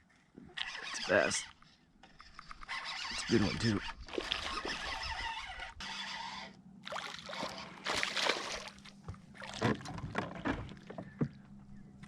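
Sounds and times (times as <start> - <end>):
water splashing: 4.0 - 5.2, 6.8 - 11.0.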